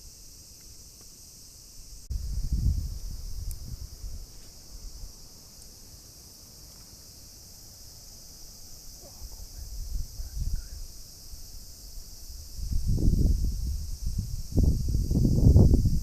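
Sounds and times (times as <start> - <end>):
high-pitched insect chorus: 0.0 - 16.0
wind buffeting microphone: 2.1 - 5.1, 9.2 - 16.0.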